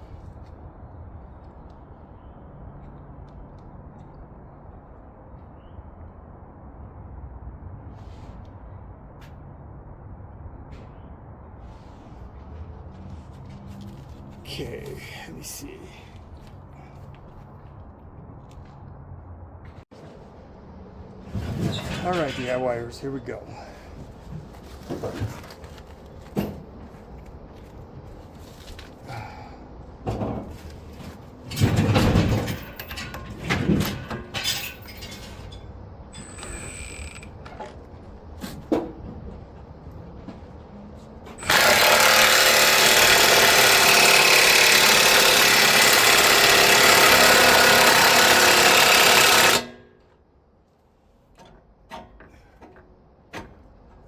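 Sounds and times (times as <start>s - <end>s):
metal clanks and knocks: 30.1s - 35.6s, 51.3s - 53.7s
impact wrench running: 41.4s - 49.8s.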